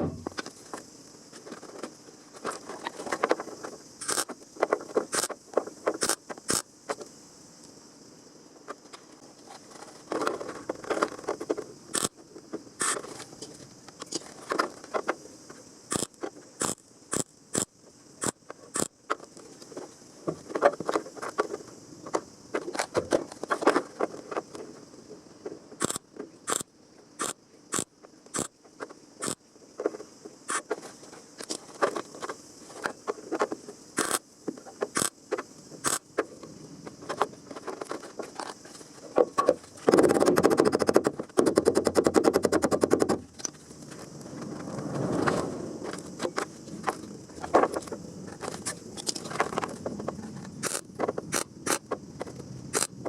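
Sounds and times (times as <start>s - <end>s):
faint high hiss: 0.0s - 39.9s
hand scraping with clicks: 12.8s - 15.2s, 25.8s - 36.0s.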